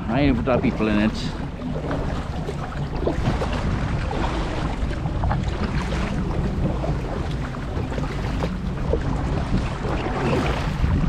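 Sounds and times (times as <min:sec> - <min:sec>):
water lapping against kayak: 0:00.0 - 0:11.0
wind buffeting microphone: 0:00.0 - 0:11.0.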